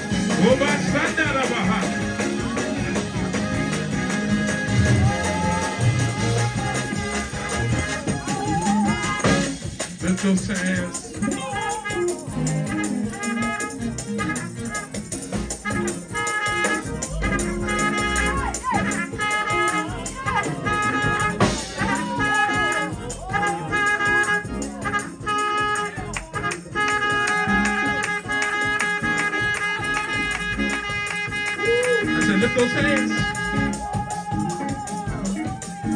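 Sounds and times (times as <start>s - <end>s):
fast dense drumming: 0.0s - 13.3s, 14.2s - 25.4s, 29.0s - 35.9s
sustained chords: 16.8s - 19.3s.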